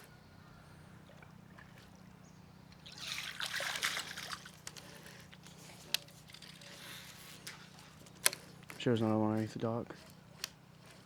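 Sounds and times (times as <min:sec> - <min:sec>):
water splashing and trickling: 0:01.0 - 0:05.4.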